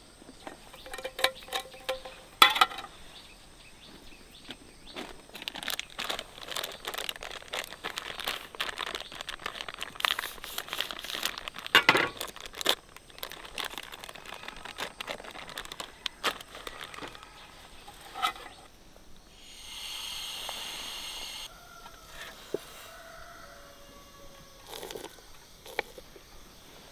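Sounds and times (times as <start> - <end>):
crinkling and rustling with clicks: 0.3 - 3.0, 3.9 - 18.7, 24.6 - 26.4
steady hiss: 17.5 - 23.8.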